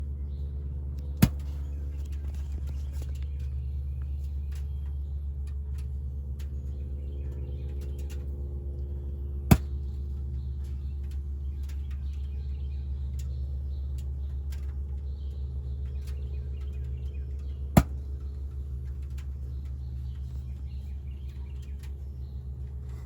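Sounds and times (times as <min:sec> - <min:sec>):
van engine idling: 0:00.0 - 0:23.0
sharp engine pops: 0:01.2 - 0:01.7, 0:09.5 - 0:10.0, 0:17.8 - 0:18.2.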